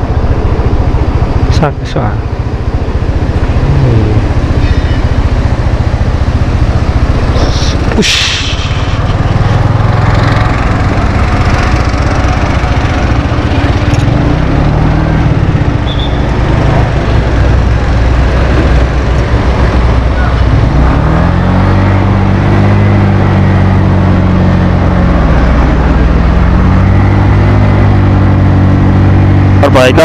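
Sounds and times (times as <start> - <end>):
scooter engine running: 0.0 - 30.0.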